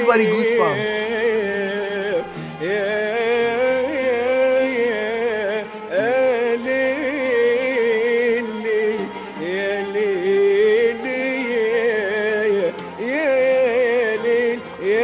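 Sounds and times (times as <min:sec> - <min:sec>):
person singing improvised passage: 0:00.0 - 0:01.0.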